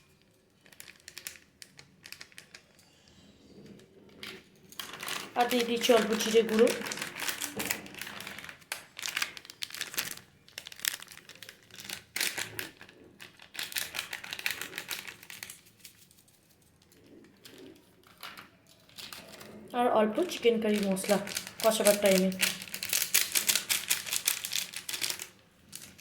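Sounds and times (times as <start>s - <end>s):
meat frying crackle: 5.0s - 15.5s, 20.6s - 26.0s.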